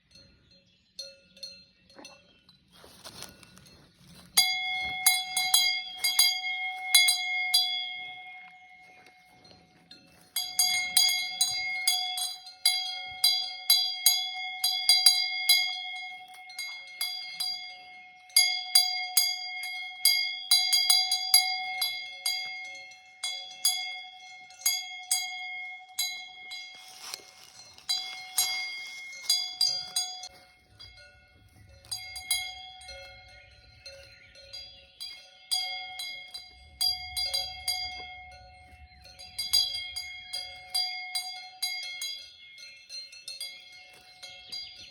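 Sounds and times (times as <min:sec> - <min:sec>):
cowbells clanking: 0:00.0 - 0:44.9
rustling noise: 0:02.8 - 0:05.0, 0:26.6 - 0:32.0.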